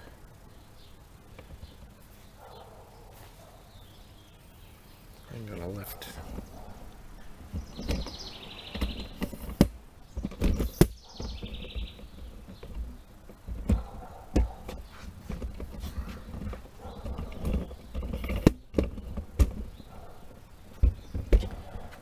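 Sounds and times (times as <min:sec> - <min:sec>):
sharp knocks and handling thumps: 0:01.2 - 0:02.6, 0:05.6 - 0:22.0
bird trilling: 0:06.1 - 0:13.2.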